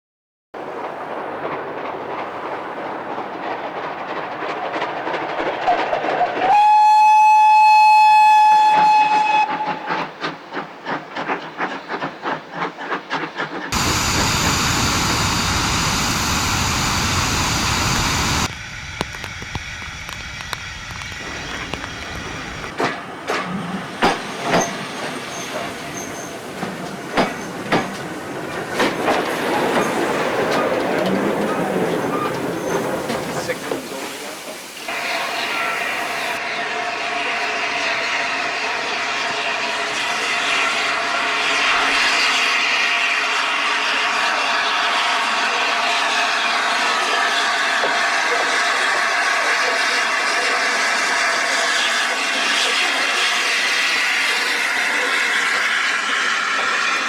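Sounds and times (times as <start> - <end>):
train wheels clicking on rails: 0.6 - 36.6, 37.2 - 57.0
steam locomotive rhythmic beat: 6.2 - 18.4
steam locomotive whistle: 6.4 - 10.2, 34.9 - 57.0
loud steady rush: 13.8 - 22.8.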